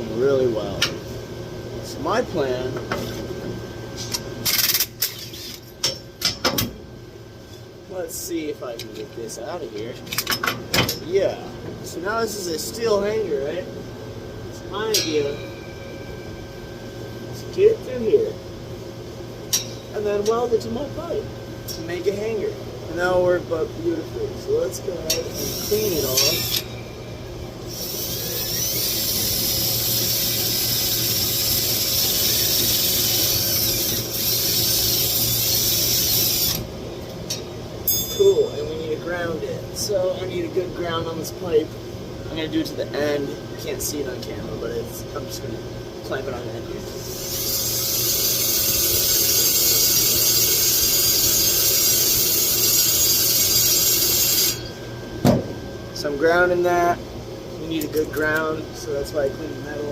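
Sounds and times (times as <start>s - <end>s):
power tool grinding metal pipe: 47.1s - 54.6s.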